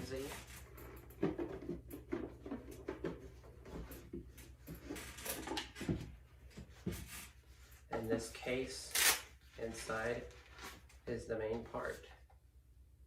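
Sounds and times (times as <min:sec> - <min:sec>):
handling packaging knocks and rustles: 0:01.0 - 0:07.2.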